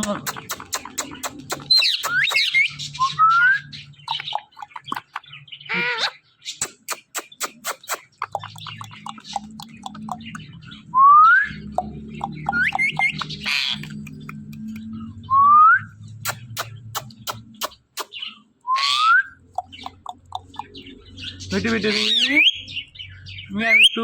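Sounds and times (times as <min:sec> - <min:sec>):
sharp clicks: 0:00.0 - 0:02.5, 0:06.6 - 0:10.4, 0:11.8 - 0:14.9, 0:16.2 - 0:18.2, 0:19.4 - 0:20.8
parrot whistling and chirping: 0:00.4 - 0:05.1, 0:05.7 - 0:10.4, 0:11.0 - 0:20.8
harsh parrot call: 0:04.0 - 0:10.4, 0:11.5 - 0:14.2, 0:16.2 - 0:22.7.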